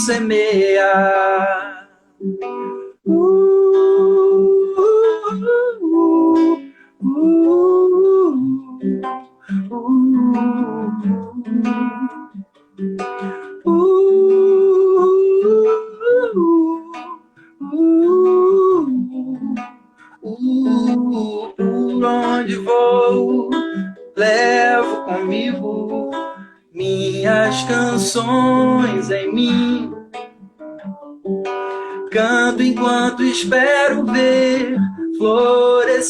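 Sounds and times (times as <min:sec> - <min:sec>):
acoustic guitar plucking: 0:00.0 - 0:36.0
person humming melody: 0:09.6 - 0:12.4, 0:26.8 - 0:30.0.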